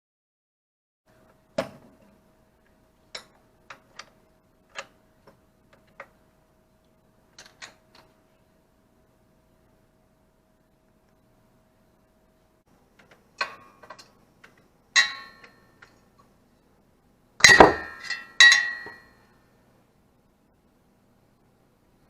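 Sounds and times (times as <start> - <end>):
metal tools clinking: 15.0 - 16.0, 17.4 - 19.3.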